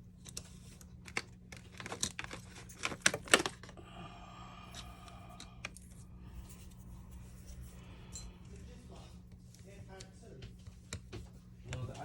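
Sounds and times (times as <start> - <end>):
low hum: 3.7 - 9.7.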